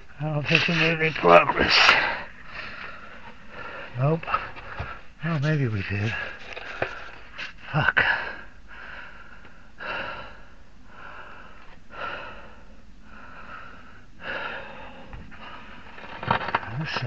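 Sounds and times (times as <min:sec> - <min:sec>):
man breathing heavily: 0:01.8 - 0:05.2, 0:06.0 - 0:16.2.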